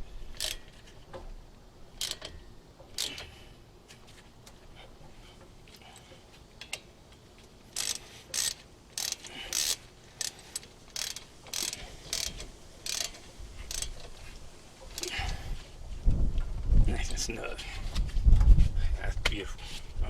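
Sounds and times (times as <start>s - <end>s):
ratchet wrench clicking: 0.4s - 0.7s, 2.0s - 3.2s, 7.7s - 14.1s, 14.9s - 15.2s.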